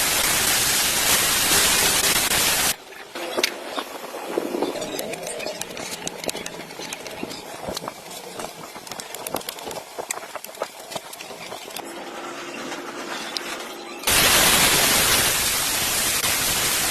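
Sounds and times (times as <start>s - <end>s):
loud static hiss: 0.0s - 3.0s, 14.1s - 16.9s
scattered clicks and taps: 4.6s - 11.8s.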